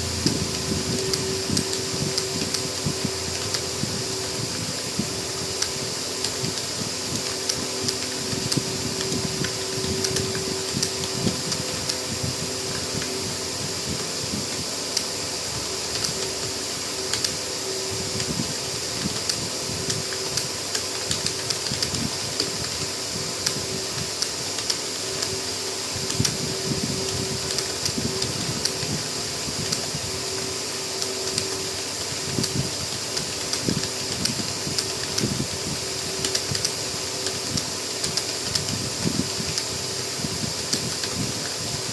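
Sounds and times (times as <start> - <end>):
fan humming: 0.0 - 41.9.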